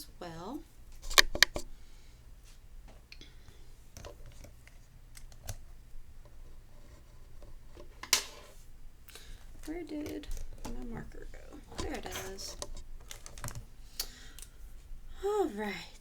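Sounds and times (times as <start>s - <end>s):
clicks and taps of hand tools: 1.0s - 1.7s.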